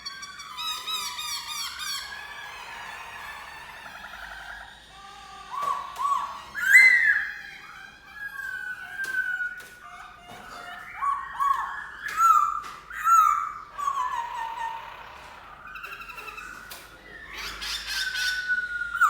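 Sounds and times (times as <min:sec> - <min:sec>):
bird singing whistled phrases: 0:05.5 - 0:09.9, 0:10.6 - 0:14.8, 0:15.6 - 0:19.0.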